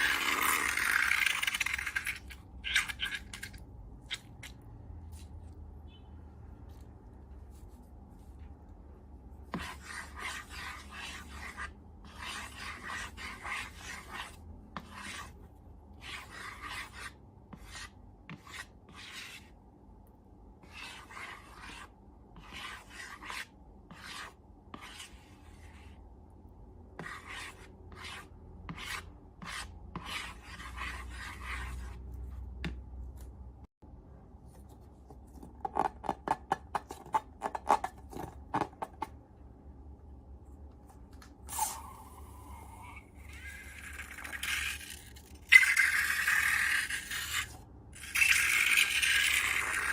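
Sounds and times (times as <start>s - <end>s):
slime rubbing and scraping: 0.0s - 5.4s.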